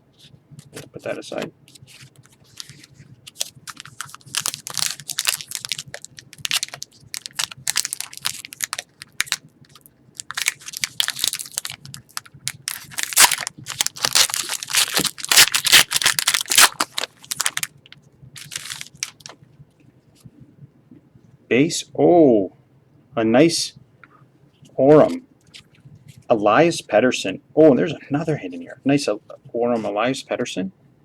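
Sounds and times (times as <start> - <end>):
cards shuffled in hands: 0.7 - 17.7, 18.4 - 19.4
wrapper tearing and crinkling: 1.9 - 17.7, 18.4 - 19.3.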